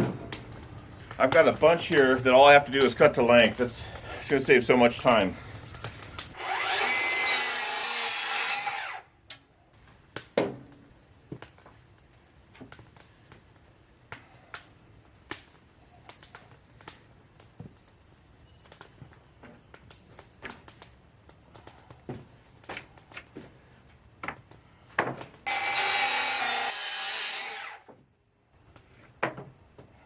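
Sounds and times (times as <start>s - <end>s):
power saw cutting wood: 6.4s - 9.0s, 25.5s - 27.9s
knocks of wooden boards handled: 25.0s - 25.4s, 29.2s - 30.0s.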